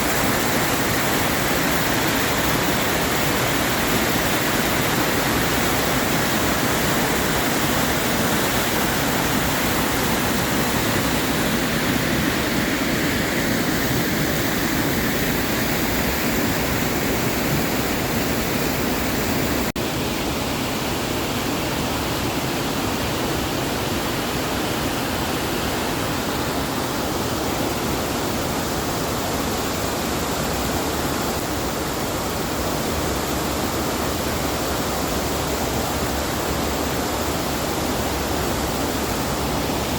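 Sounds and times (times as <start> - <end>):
waterfall rushing: 0.0 - 19.7.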